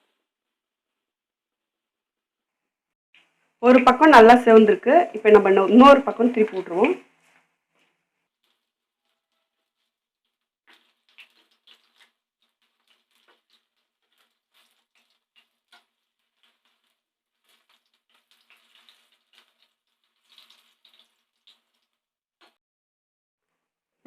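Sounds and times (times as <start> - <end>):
food sizzling in hot oil: 3.8 - 7.0, 8.2 - 22.6.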